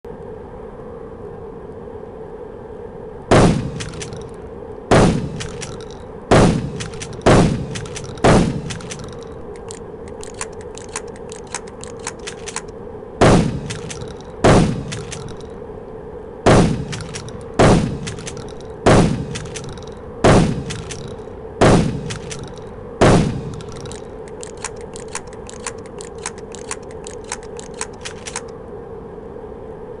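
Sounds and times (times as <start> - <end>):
steady hum: 0.1 - 30.0
shotgun shots: 3.3 - 15.5, 16.5 - 28.4
light metallic clicks: 6.7 - 12.7, 13.5 - 15.6, 16.8 - 21.3, 22.0 - 22.7, 23.3 - 28.5.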